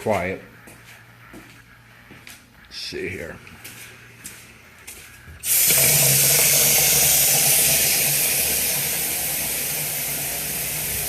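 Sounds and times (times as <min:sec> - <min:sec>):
water rushing from tap: 0:05.4 - 0:11.0.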